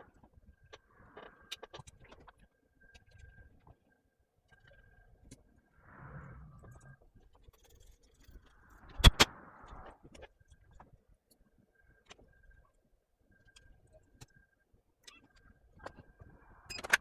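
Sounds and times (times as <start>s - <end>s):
sharp clicks: 8.9s - 9.9s.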